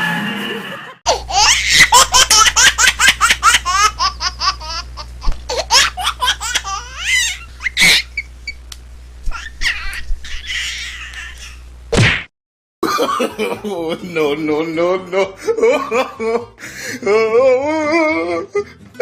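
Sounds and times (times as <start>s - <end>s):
person laughing hard: 0.5s - 4.9s, 12.8s - 18.7s
music: 16.6s - 19.0s.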